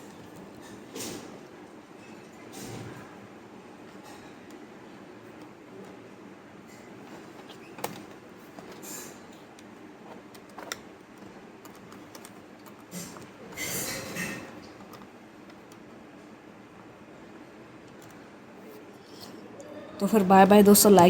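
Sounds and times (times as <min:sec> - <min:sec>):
plastic laptop parts clicking: 0:09.6 - 0:13.3.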